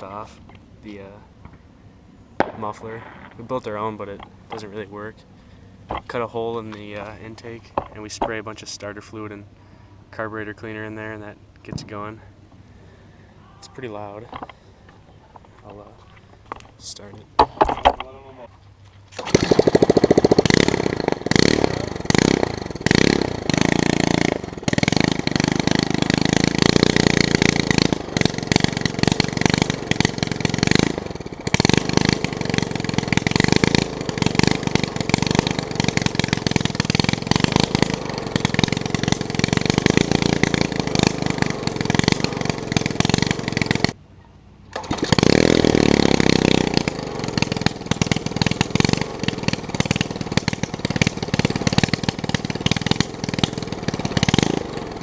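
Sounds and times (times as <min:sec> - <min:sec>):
lawn mower engine running unevenly: 0:19.0 - 0:44.0, 0:44.7 - 0:55.0.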